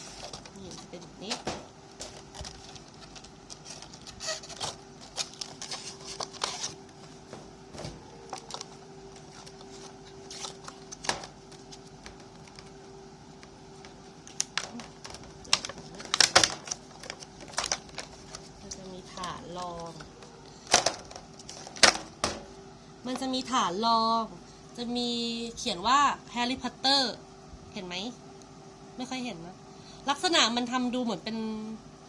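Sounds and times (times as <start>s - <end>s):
cardboard and plastic rustling: 0.0s - 12.8s, 13.4s - 23.4s
faint steady hum: 0.0s - 32.0s
packaging clattering: 0.1s - 7.0s, 7.8s - 12.7s, 14.3s - 22.5s.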